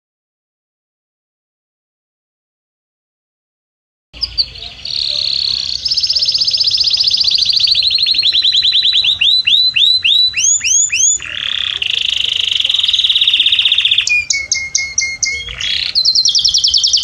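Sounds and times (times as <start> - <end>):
canary singing: 4.2 - 17.0.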